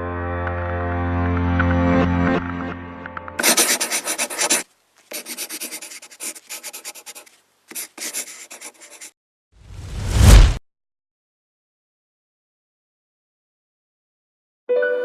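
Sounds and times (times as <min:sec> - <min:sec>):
rapid scratching: 0:03.4 - 0:09.1.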